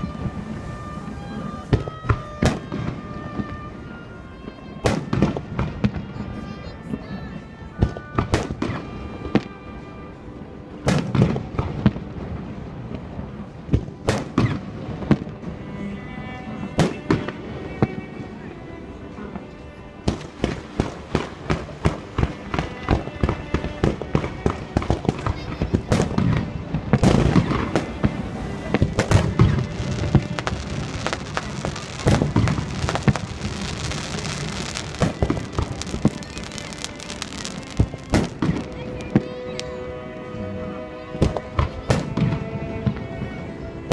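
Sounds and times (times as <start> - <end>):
fireworks bangs: 0.0 - 3.8, 4.8 - 6.2, 7.8 - 9.6, 13.7 - 15.4, 20.0 - 39.7
music: 0.0 - 43.9.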